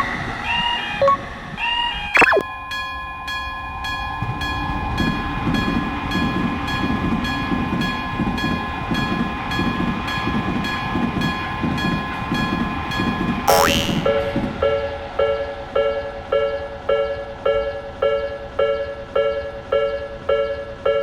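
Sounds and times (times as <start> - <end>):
railroad crossing warning bell: 14.6 - 21.0.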